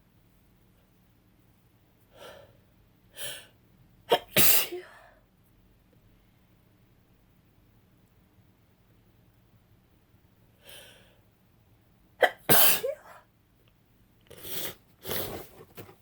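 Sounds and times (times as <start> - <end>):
woman sneezing: 12.2 - 13.2.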